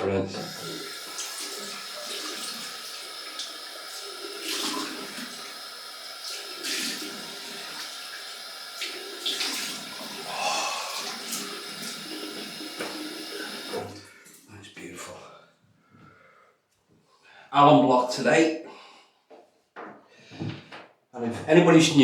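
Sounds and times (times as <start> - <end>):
tap water running into sink: 0.0 - 14.4
water splashing on face: 0.4 - 14.0.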